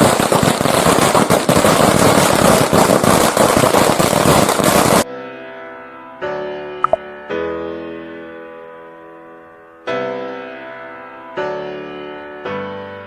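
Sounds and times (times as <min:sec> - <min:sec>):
firecrackers popping: 0:00.0 - 0:05.0.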